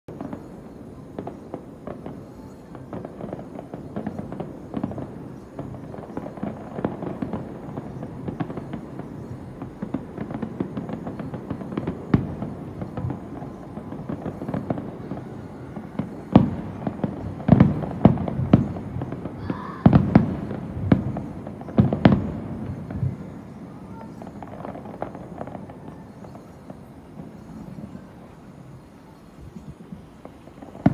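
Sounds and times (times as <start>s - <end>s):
fireworks booming: 0.1s - 30.9s
fireworks crackling: 0.1s - 30.9s.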